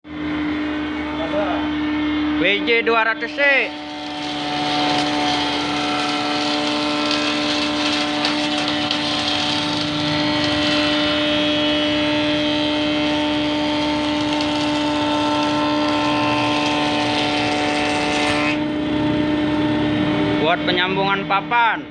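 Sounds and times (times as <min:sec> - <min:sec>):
woodworking machine humming: 0:03.3 - 0:19.1.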